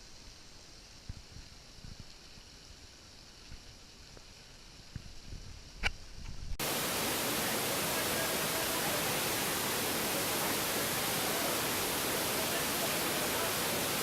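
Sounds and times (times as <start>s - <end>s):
open-air ambience: 0.0s - 14.0s
waterfall roaring: 6.6s - 14.0s.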